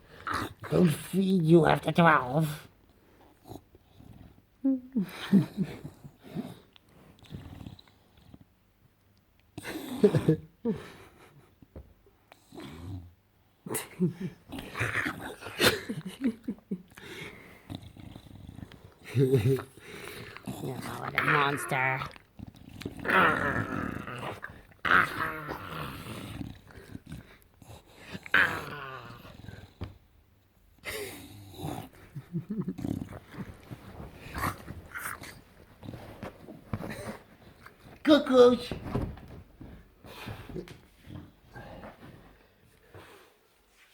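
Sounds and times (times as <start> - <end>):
dog grunting and snorting: 17.0 - 29.9, 30.8 - 37.8.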